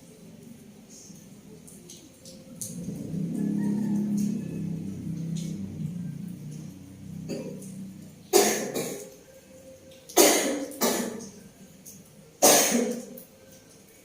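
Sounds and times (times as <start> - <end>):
woman coughing harshly: 10.2 - 11.2, 12.4 - 13.0.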